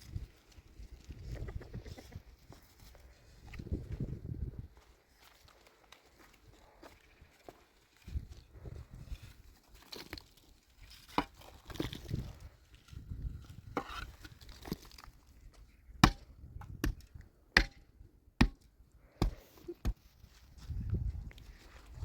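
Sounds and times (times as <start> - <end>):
chopping strikes: 16.0 - 17.0, 17.6 - 17.8, 18.4 - 20.0
rustling and shuffling: 19.5 - 22.0.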